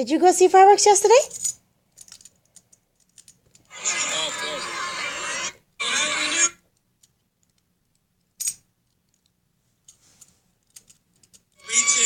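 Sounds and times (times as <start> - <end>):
small objects clicking and tapping: 1.3 - 3.7, 7.0 - 11.6.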